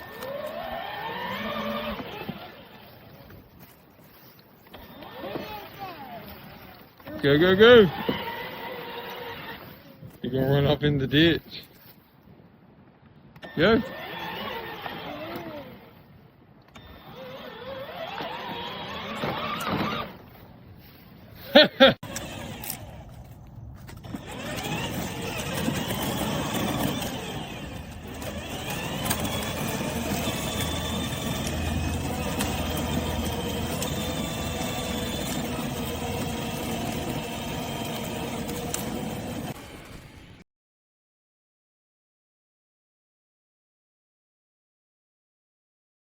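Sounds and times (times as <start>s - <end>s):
electric motors whining: 0.0s - 11.3s, 13.4s - 16.0s, 16.7s - 20.4s, 22.0s - 40.4s.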